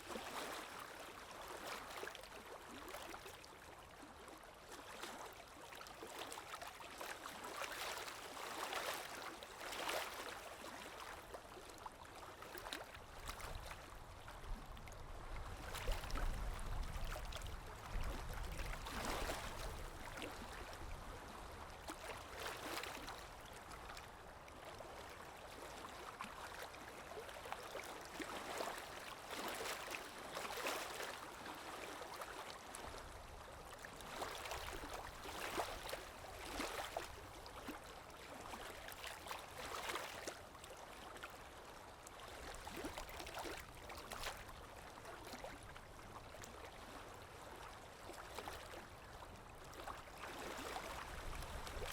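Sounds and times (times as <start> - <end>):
deep rumble of large wave: 14.2 - 21.7.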